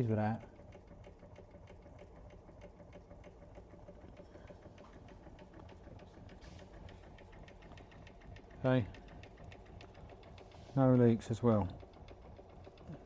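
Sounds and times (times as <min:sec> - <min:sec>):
model steam engine ticking: 0:00.1 - 0:13.0.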